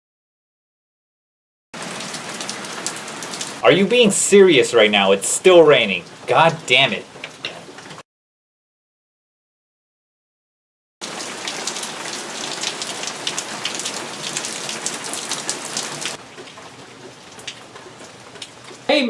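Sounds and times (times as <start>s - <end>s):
rain pattering: 1.8s - 8.0s, 11.0s - 19.0s.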